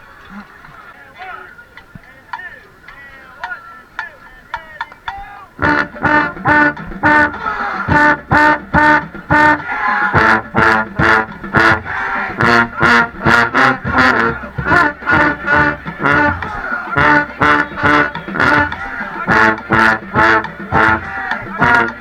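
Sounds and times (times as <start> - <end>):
brass band chords: 2.3 - 22.0
driving drum beat: 3.4 - 22.0.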